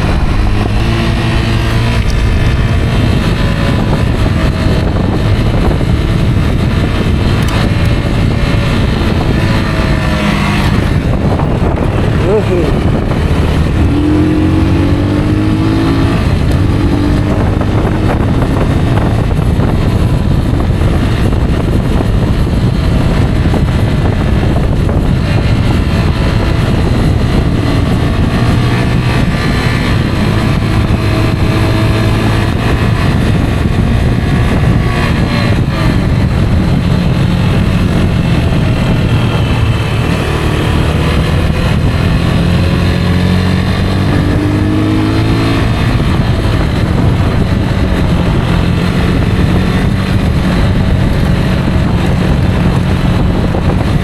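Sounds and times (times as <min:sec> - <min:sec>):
low rushing noise: 0:00.0 - 0:18.7
motorcycle engine running: 0:00.0 - 0:54.0.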